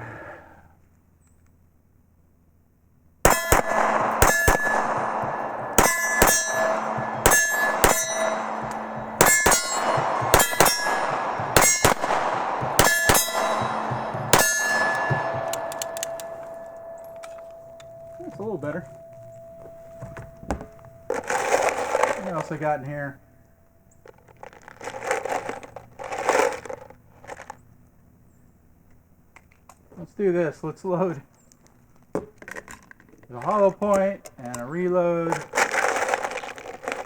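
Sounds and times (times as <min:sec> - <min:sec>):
pistol shots: 0:03.3 - 0:18.3
metal target clanging and ringing: 0:03.3 - 0:23.2.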